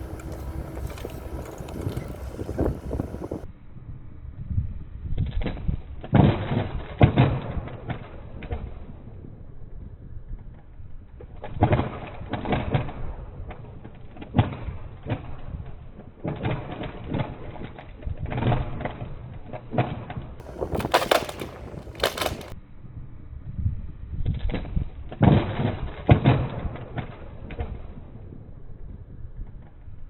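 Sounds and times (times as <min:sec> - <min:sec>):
wooden branches snapping: 0:00.0 - 0:03.4, 0:20.4 - 0:22.6.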